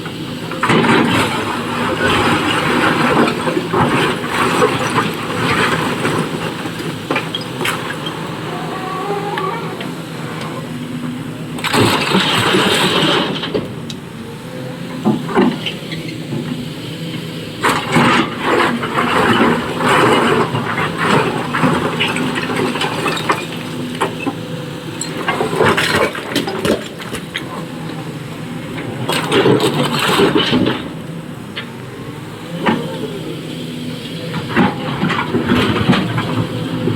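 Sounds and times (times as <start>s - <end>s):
excavator diesel engine running: 0.0s - 36.9s.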